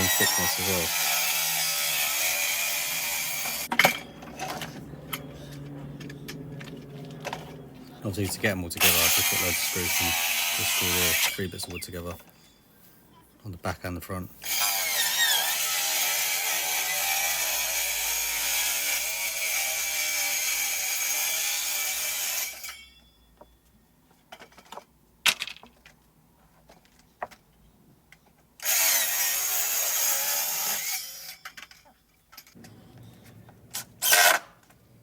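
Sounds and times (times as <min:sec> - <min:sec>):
power drill driving screws: 0:00.0 - 0:03.7, 0:08.8 - 0:11.4, 0:14.4 - 0:22.8, 0:28.6 - 0:31.6, 0:33.8 - 0:34.5.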